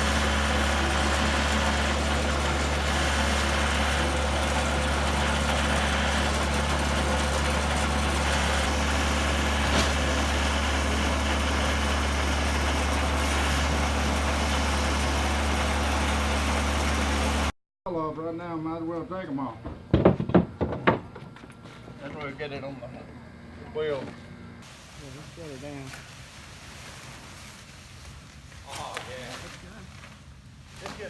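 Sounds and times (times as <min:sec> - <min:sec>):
machine low hum: 0:00.0 - 0:17.5.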